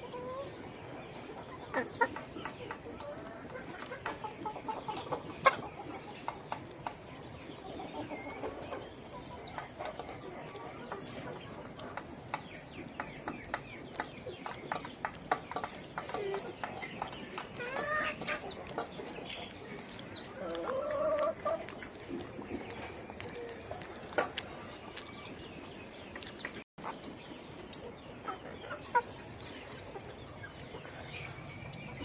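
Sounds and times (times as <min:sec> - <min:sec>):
background birds: 0:00.0 - 0:32.0
chicks chirping: 0:00.0 - 0:32.0.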